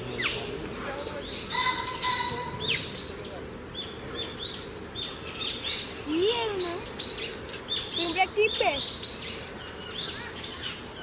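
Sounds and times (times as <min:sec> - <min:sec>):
small birds chirping: 0:00.0 - 0:11.0
lower wavering bird call: 0:01.2 - 0:03.3.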